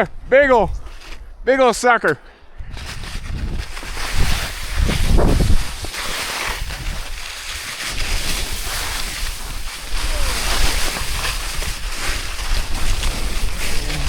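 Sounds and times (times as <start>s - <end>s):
wind rushing over microphone: 2.6s - 7.2s, 8.3s - 14.0s
skis scraping on snow: 2.8s - 14.0s.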